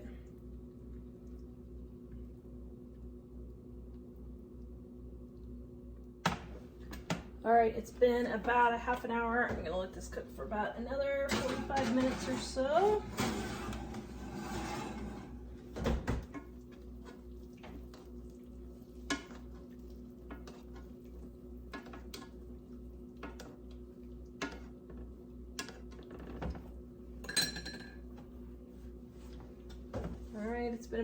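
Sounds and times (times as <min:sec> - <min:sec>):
utensil clinking on pan and dishes: 0:11.3 - 0:13.7, 0:27.2 - 0:28.0.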